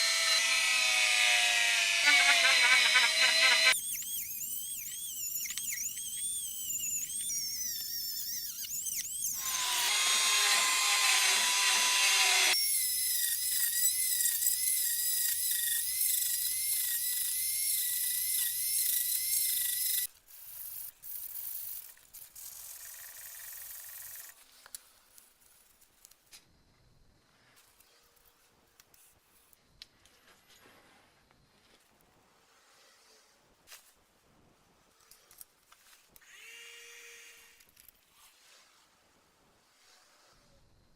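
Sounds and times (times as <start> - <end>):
power tool whining on metal: 0.0 - 20.1.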